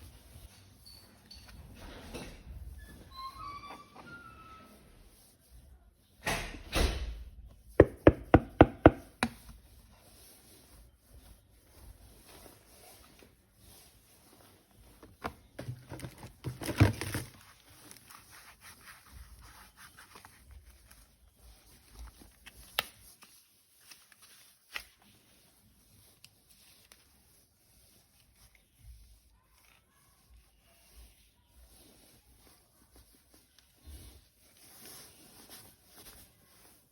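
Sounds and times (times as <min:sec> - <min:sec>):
plastic rustling: 0:09.1 - 0:36.9.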